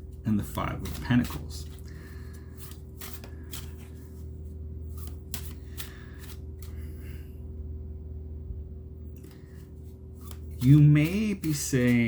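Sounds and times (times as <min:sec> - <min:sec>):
cards rustling: 0:00.0 - 0:07.0, 0:09.2 - 0:12.0
low electrical hum: 0:00.0 - 0:12.0
cards snapping: 0:00.4 - 0:04.1, 0:04.9 - 0:06.9, 0:10.2 - 0:12.0.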